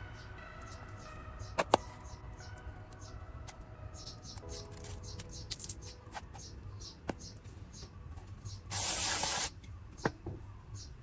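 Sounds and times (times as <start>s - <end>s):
spray hiss: 8.7s - 9.5s.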